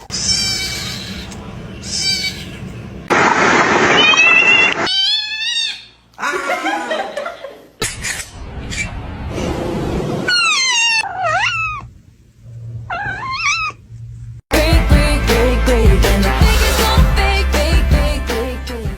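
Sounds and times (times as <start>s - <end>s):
cat meowing: 0.0s - 2.6s, 4.0s - 6.0s, 10.3s - 11.9s, 12.9s - 13.8s
loud music: 14.5s - 18.9s.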